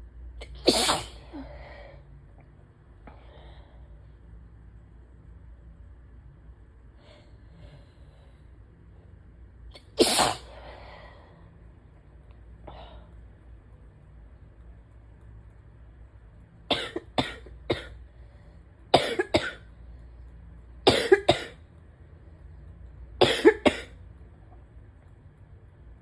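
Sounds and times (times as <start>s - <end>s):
person coughing: 16.7s - 18.0s, 19.0s - 19.6s, 20.9s - 21.6s, 23.2s - 23.9s.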